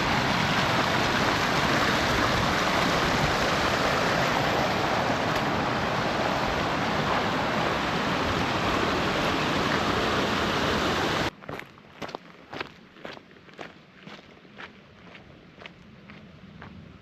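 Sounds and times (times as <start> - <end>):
river water rushing: 0.0 - 11.3.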